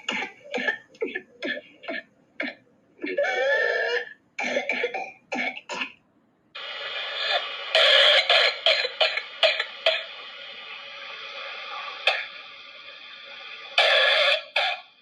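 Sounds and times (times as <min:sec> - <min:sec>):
person coughing: 0:00.0 - 0:06.0, 0:07.3 - 0:10.1, 0:13.8 - 0:14.9
steady background hiss: 0:00.0 - 0:15.0.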